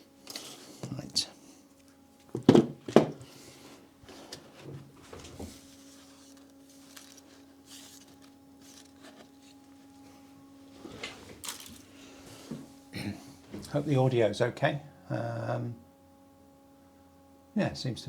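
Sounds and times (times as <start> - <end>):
faint electrical hum: 0.0 - 18.0
handling sounds: 0.1 - 12.8
sharp knocks: 2.4 - 3.2.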